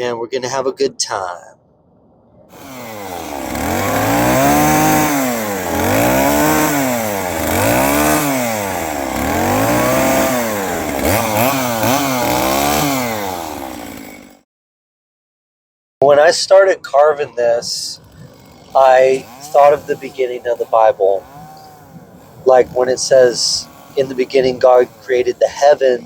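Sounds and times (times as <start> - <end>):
chainsaw cutting wood: 2.5 - 14.4, 18.0 - 26.0.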